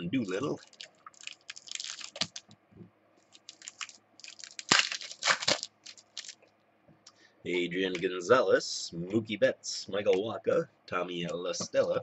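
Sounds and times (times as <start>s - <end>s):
cards and wrappers rustling: 0.6s - 2.5s, 3.2s - 6.4s.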